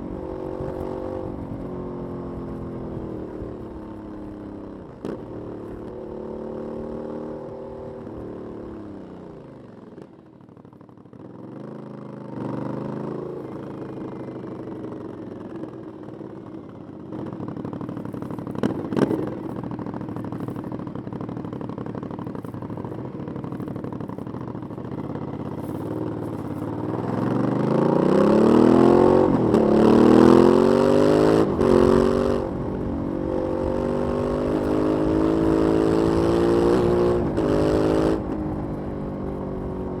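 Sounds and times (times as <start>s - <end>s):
motorcycle engine accelerating: 0.0s - 40.0s.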